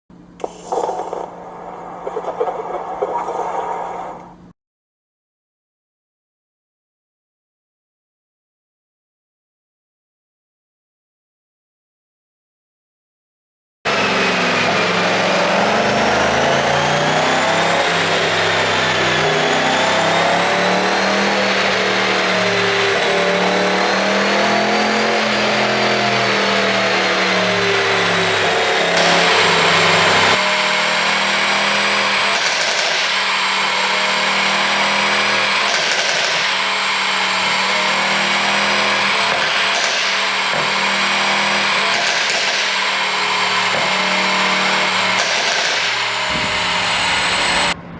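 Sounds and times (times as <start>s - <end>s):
car engine running: 0.2s - 4.5s, 13.9s - 47.9s.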